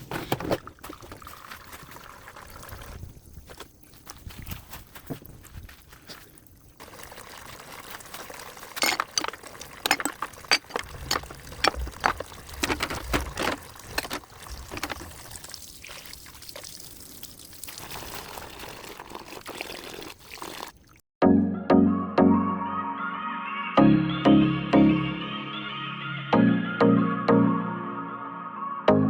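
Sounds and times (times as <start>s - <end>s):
water running and splashing: 0.6s - 21.0s
sharp knocks and clatters: 8.8s - 15.1s
music: 21.2s - 29.0s.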